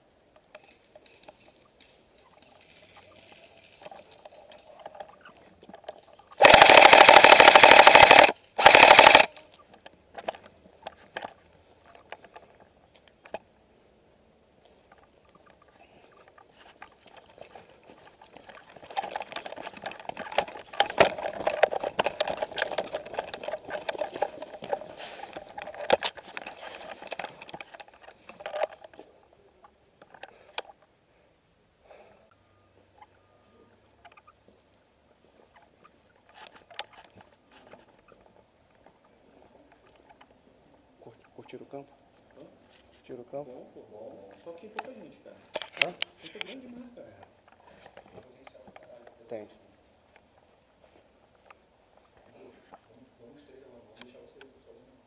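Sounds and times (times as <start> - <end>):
quiet clicks and rustling: 0.0 - 55.0
airsoft gun firing bursts: 6.4 - 9.3.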